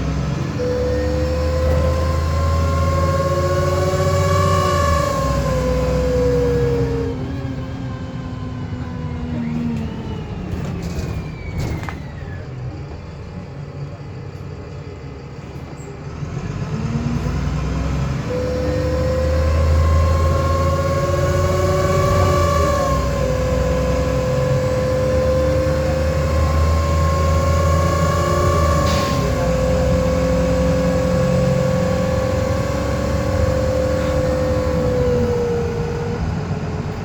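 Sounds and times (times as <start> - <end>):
bus engine whirring whine: 0.0 - 37.0.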